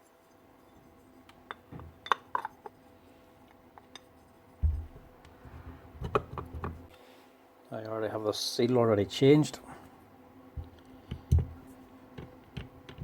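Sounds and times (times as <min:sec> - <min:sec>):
dull thump: 0:04.6 - 0:05.0.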